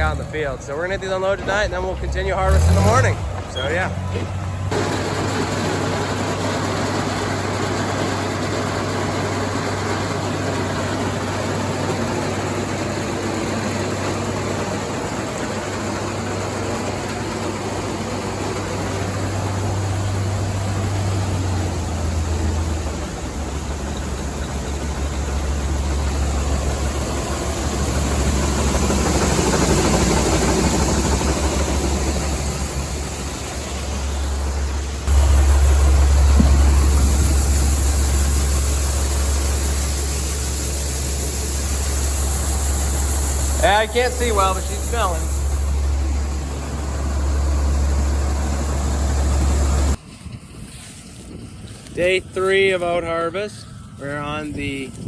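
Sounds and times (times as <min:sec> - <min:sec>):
tractor engine running: 0:00.0 - 0:55.0.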